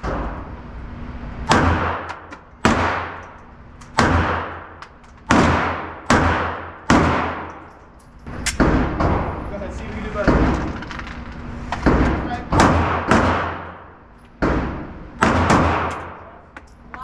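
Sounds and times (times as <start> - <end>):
gunshots with ringing echo: 1.4 - 9.4, 11.8 - 16.3.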